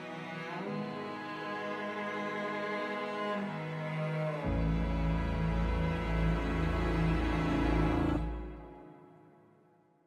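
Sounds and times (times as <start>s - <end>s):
orchestral strings sustained chords: 0.0s - 9.5s.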